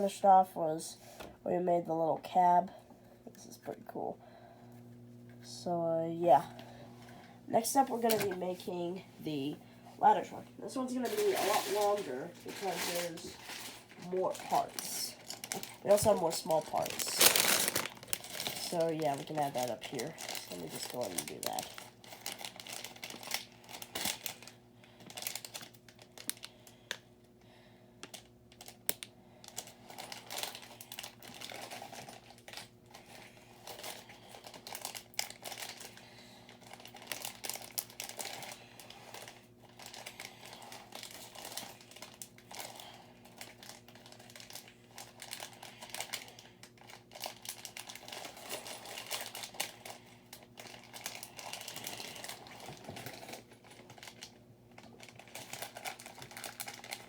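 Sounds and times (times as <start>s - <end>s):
plastic crinkling: 10.6s - 27.0s, 28.0s - 57.0s.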